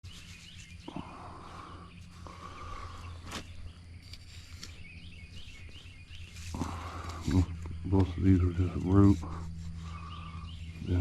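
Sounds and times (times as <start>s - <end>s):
faint chirping: 0.0s - 11.0s
man breathing hard: 0.8s - 3.3s, 9.7s - 10.7s.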